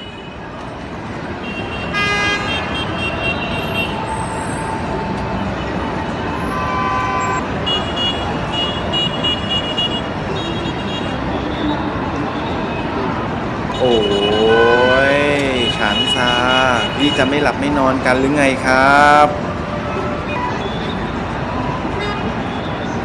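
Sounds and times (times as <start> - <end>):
city street traffic: 0.0 - 23.0
car horn toots and beeps: 6.4 - 11.2, 13.7 - 17.3.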